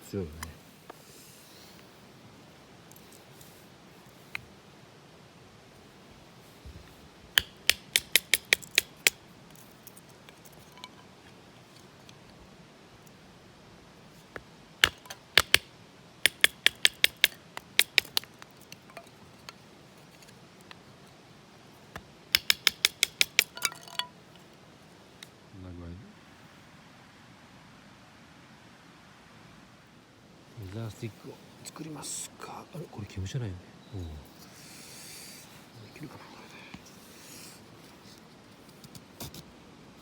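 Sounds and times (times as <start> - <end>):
sharp metallic clicks: 7.4 - 9.2, 16.3 - 18.3, 22.3 - 23.6.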